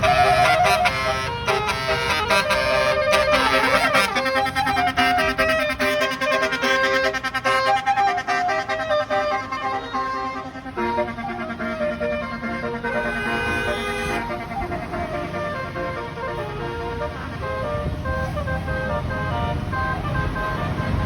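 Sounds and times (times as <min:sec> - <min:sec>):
musical air horn melody: 0:00.0 - 0:21.0.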